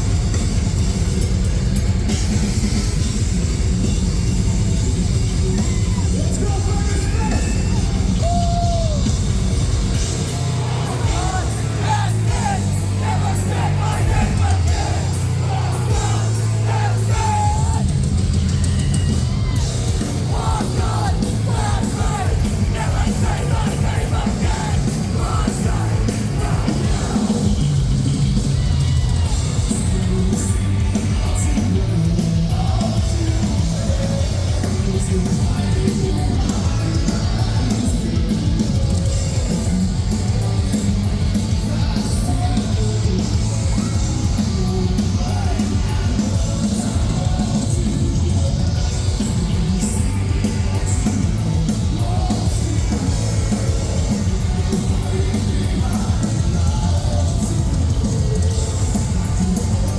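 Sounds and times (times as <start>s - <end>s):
bass: 0.0s - 59.9s
distorted guitars: 0.0s - 59.9s
drums: 0.0s - 59.9s
vocalist yelling and singing: 5.6s - 9.1s, 10.3s - 18.1s, 18.8s - 27.7s.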